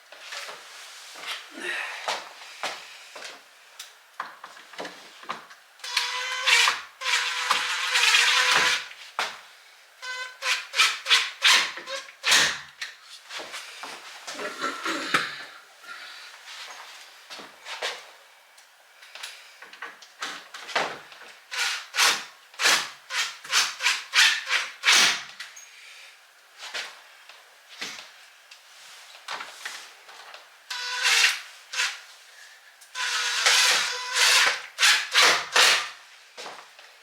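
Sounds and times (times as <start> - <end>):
faint squeak: 10.0 - 10.8.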